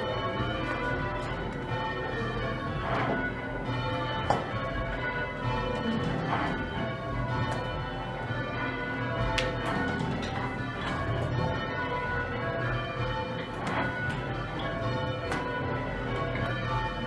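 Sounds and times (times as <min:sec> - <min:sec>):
church bells change ringing: 0:00.0 - 0:17.0.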